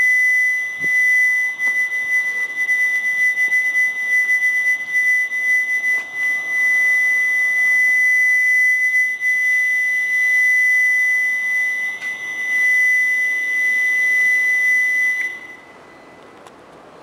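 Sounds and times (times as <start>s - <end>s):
loud high-pitched whine: 0.0s - 16.4s
faint higher tone: 8.8s - 16.2s.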